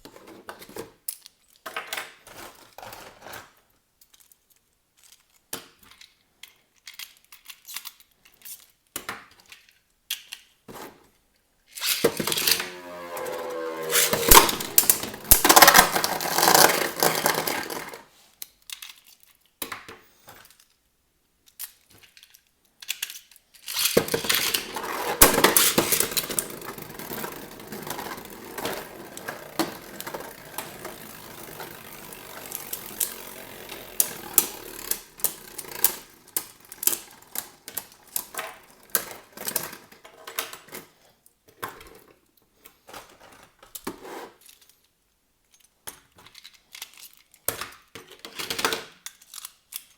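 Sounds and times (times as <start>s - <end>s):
spinning tops clashing: 23.8s - 39.0s.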